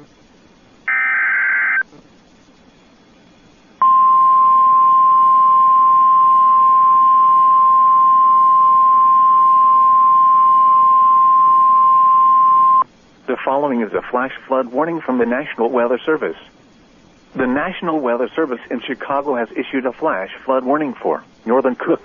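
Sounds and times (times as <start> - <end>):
steady alert tone: 0.9 - 1.8
warbling data screech: 0.9 - 1.8.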